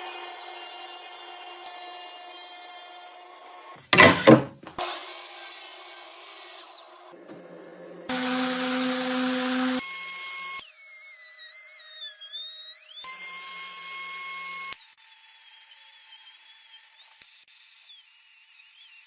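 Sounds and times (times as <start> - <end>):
motor working wood: 3.5 - 19.0
sharp knocks: 4.0 - 4.6
power tool motor whining: 8.1 - 19.0.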